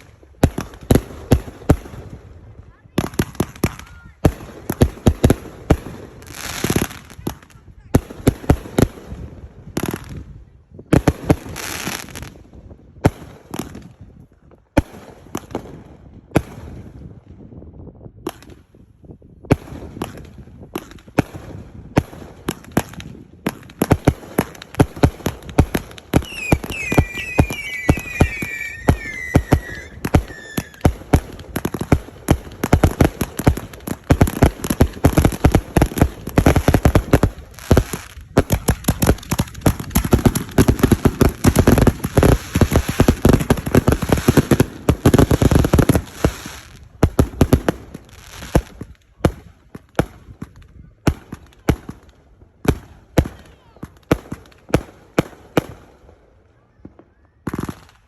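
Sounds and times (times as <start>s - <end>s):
fireworks bangs and cracks: 0.0s - 18.8s, 19.4s - 56.2s
fireworks whistling: 25.8s - 31.5s.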